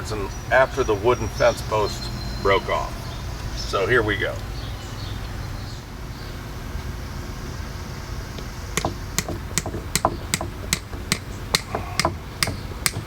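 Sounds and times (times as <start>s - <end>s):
hammer striking metal spike: 8.8s - 13.0s.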